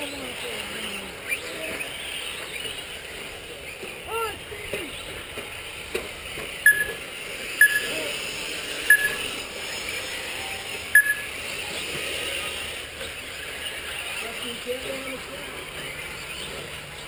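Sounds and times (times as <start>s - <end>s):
short electronic beeps: 6.7s - 7.0s, 7.6s - 8.1s, 8.9s - 9.3s, 11.0s - 11.3s.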